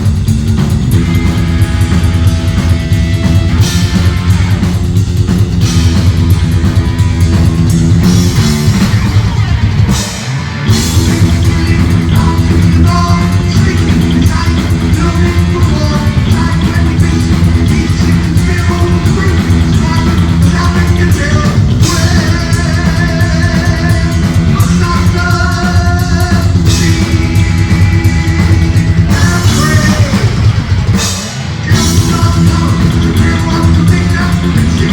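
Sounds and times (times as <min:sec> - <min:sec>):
bass: 0:00.0 - 0:34.9
distorted electric guitars: 0:00.0 - 0:34.9
drum kit: 0:00.0 - 0:34.9
person singing: 0:10.7 - 0:30.5, 0:31.7 - 0:34.9.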